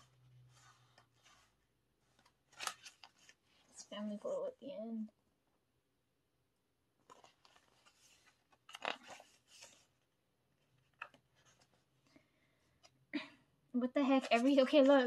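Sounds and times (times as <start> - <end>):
paper pages rustling: 0.0 - 3.8, 7.0 - 13.0, 14.0 - 15.0.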